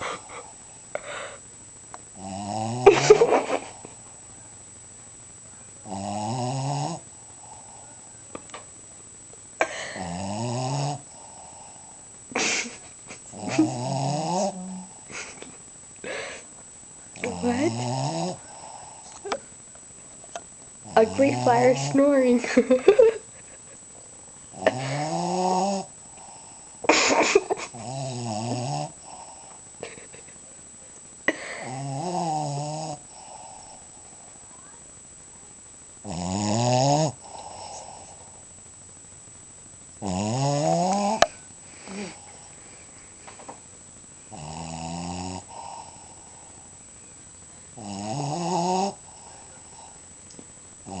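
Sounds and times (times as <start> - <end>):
dog snoring: 2.2 - 3.8, 5.8 - 8.0, 9.8 - 12.5, 13.3 - 15.1, 17.2 - 19.4, 20.8 - 22.1, 24.5 - 29.6, 31.5 - 34.1, 36.0 - 38.4, 40.0 - 42.5, 44.3 - 46.7, 47.8 - 50.0.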